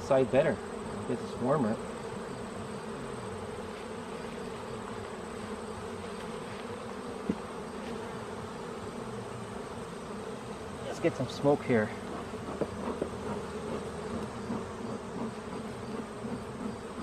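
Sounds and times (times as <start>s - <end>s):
bees buzzing around hive: 0.0s - 17.0s.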